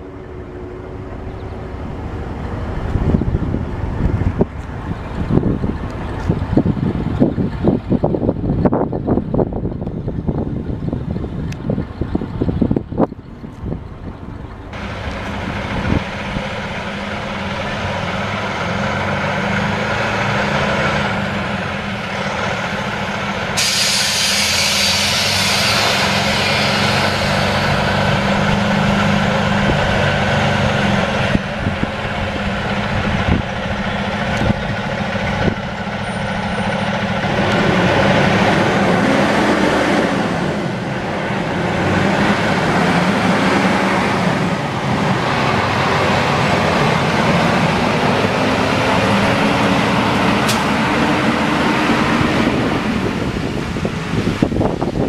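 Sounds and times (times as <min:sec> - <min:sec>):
diesel truck engine running: 0:00.0 - 0:55.0
air brakes hissing: 0:23.5 - 0:27.4.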